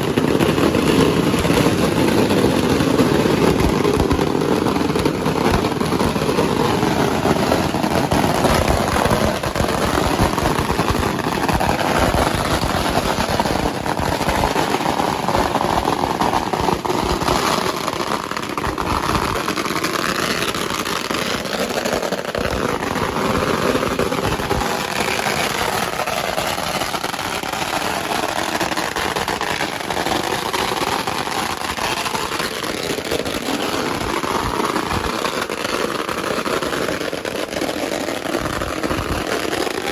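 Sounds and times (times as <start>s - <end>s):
firecrackers crackling: 0.0s - 39.9s.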